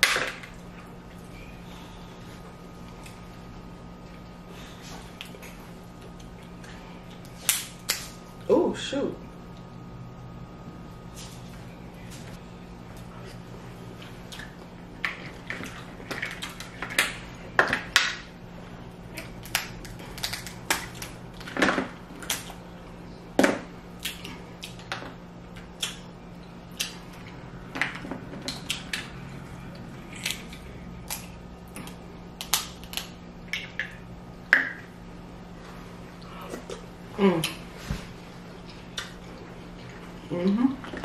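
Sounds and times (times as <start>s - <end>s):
faint steady hum: 0.0s - 41.0s
crab shells cracking: 19.1s - 21.6s, 30.1s - 34.0s.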